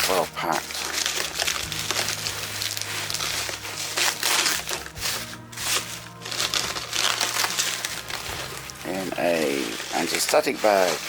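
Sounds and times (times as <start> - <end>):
packing material crinkling: 0.0 - 11.0.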